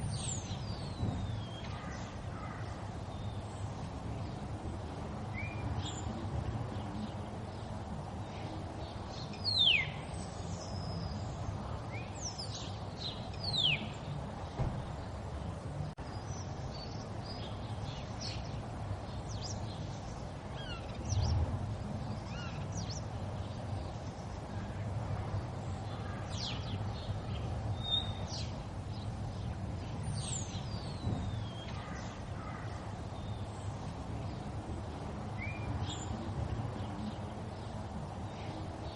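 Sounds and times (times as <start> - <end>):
dull low thump: 0.9 - 1.4, 14.5 - 15.0.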